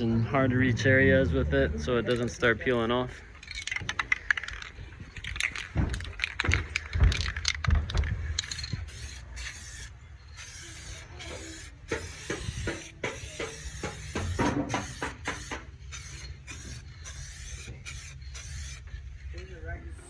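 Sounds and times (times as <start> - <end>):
knocks and handling clatter: 3.4 - 9.6
aerosol can spraying: 8.4 - 18.9.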